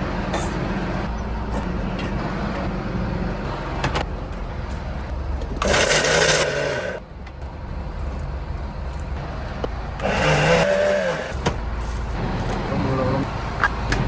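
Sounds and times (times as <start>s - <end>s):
boat engine droning: 9.4s - 11.6s.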